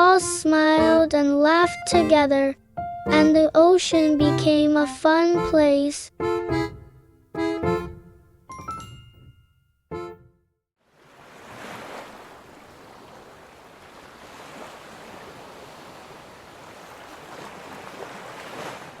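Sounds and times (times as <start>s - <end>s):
ocean waves washing in: 10.8s - 19.0s.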